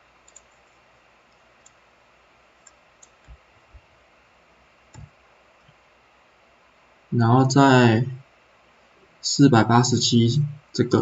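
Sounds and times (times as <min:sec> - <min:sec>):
quiet room hiss: 0:00.0 - 0:11.0.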